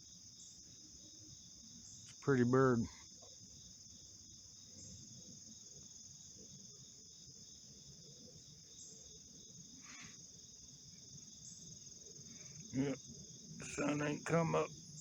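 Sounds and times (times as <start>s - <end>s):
insects chorus: 0.0s - 15.0s
faint call: 12.7s - 13.0s, 13.6s - 14.7s.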